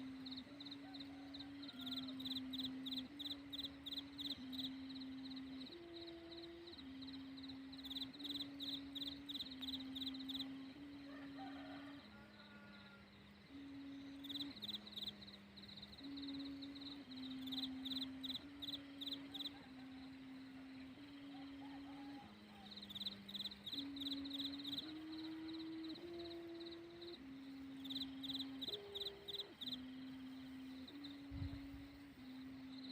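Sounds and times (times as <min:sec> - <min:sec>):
kite hummer low hum: 0:00.0 - 0:32.9
rapid pulsing high chirps: 0:13.7 - 0:32.9.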